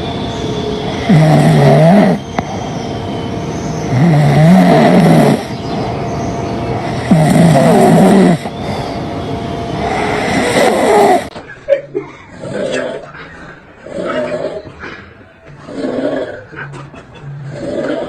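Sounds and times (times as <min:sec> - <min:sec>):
loud rhythmic snoring: 0:00.7 - 0:11.4, 0:12.3 - 0:13.2, 0:13.8 - 0:18.0.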